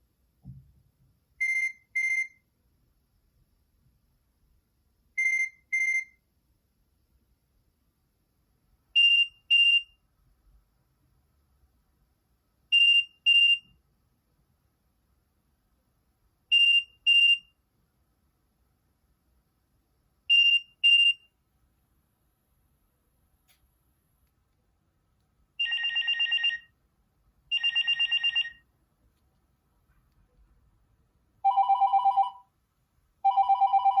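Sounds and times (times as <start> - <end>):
phone double beeps: 1.4 - 2.4, 5.2 - 6.2.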